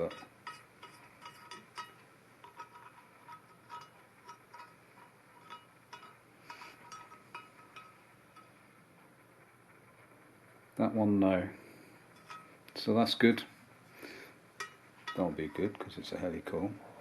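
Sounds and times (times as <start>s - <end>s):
light metallic clicks and clinks: 0.0s - 8.6s.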